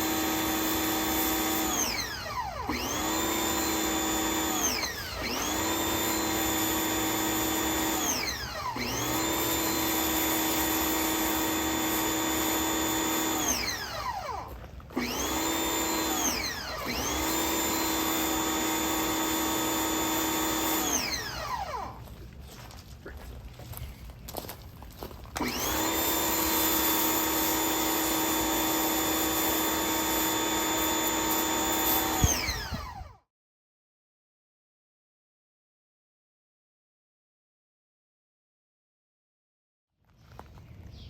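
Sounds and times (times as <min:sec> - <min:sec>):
pressure washer motor whining: 0:00.0 - 0:22.2, 0:25.4 - 0:33.2.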